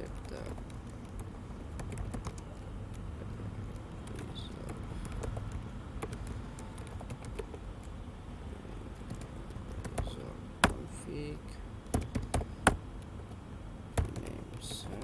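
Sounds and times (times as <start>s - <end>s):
typing on computer keyboard: 0.0s - 8.0s, 8.9s - 10.9s, 11.8s - 13.4s, 14.0s - 15.0s
low background hum: 0.0s - 15.0s.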